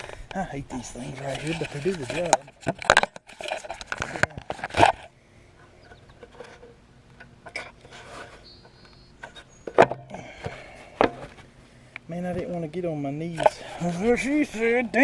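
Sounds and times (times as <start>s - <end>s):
scraper scraping mower deck: 0.8s - 5.1s, 7.5s - 11.5s, 13.4s - 15.0s.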